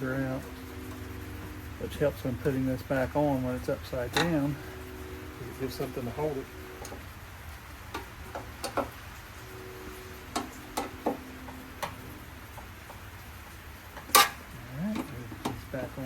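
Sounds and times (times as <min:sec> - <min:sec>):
metal parts clicking and tapping: 0:04.0 - 0:04.6, 0:07.9 - 0:09.0, 0:14.0 - 0:15.7.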